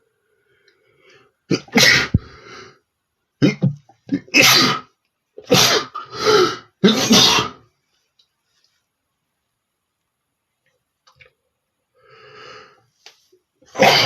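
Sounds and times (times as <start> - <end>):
man sneezing: 1.5 - 2.4, 3.4 - 4.9, 5.5 - 7.6, 13.7 - 14.0.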